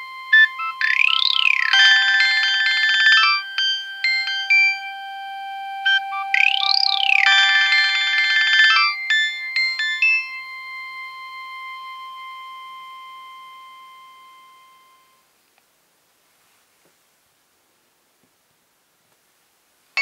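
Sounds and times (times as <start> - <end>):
phone ringtone: 0.0 - 15.2.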